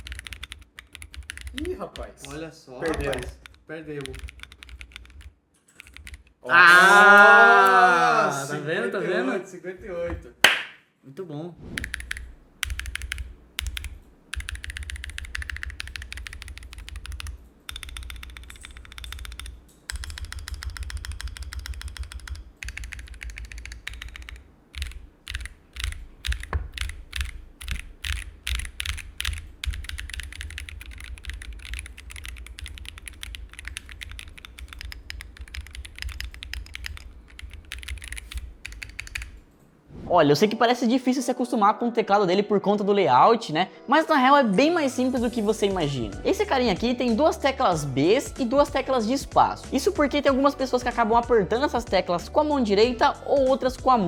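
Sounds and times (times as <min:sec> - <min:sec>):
mechanical keyboard typing: 0:00.0 - 0:06.4, 0:11.8 - 0:39.4.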